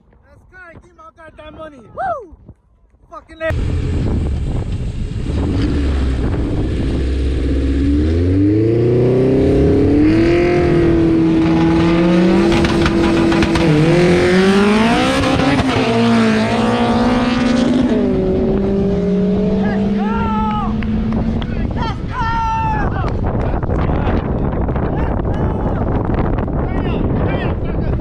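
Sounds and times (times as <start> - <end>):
car engine accelerating hard: 3.5 - 21.8.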